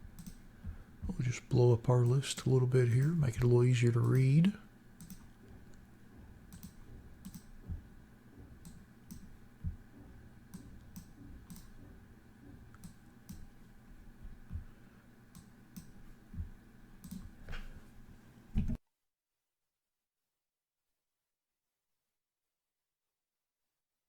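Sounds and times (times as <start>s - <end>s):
keyboard and mouse clicking: 0.0s - 0.8s, 3.0s - 4.4s, 5.0s - 5.8s, 6.4s - 13.6s, 15.3s - 17.7s
low steady hum: 0.0s - 18.8s.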